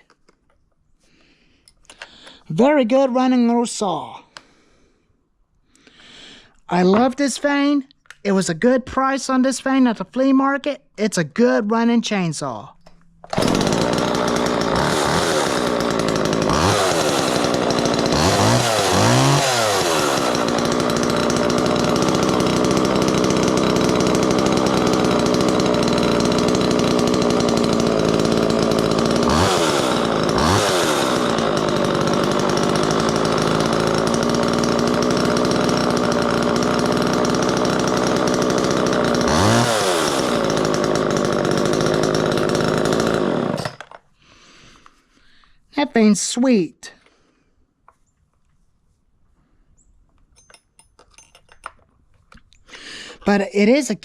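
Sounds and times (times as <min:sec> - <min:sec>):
chainsaw engine revving: 0:13.3 - 0:43.9.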